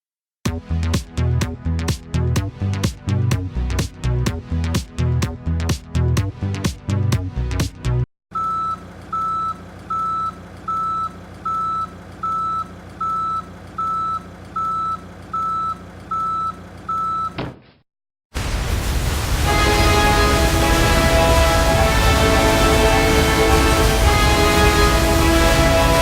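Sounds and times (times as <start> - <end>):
reversing alarm beeping: 8.4 - 17.4
low engine hum: 19.6 - 26.0.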